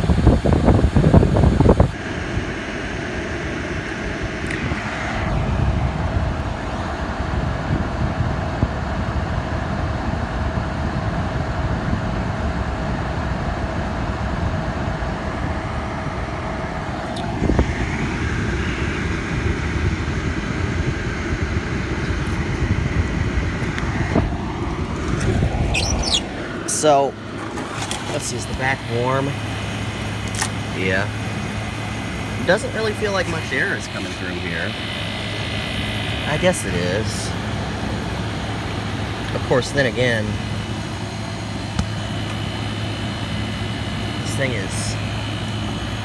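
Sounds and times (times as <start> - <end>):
air conditioner running: 0.0 - 46.0
steady tone: 17.5 - 46.0.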